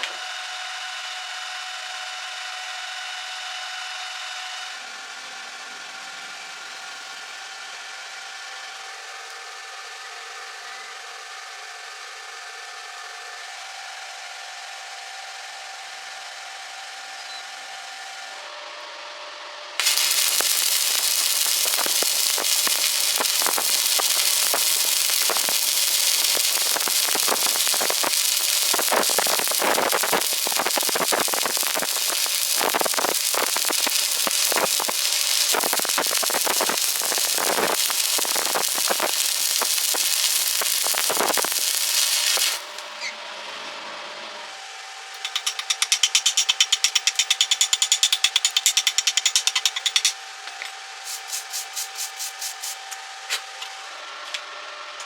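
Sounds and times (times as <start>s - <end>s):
fast regular sharp ticks: 19.8s - 42.8s, 45.2s - 50.2s
welding arc crackling: 19.8s - 43.0s, 45.2s - 53.6s.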